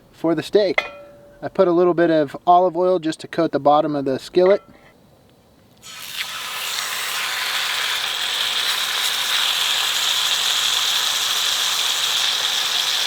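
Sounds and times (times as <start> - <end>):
oil sizzling in a skillet: 5.8 - 13.0.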